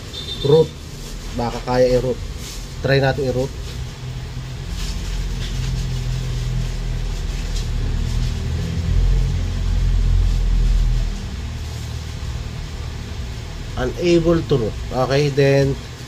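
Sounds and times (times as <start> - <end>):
low background rumble and hum: 0.0 - 16.0.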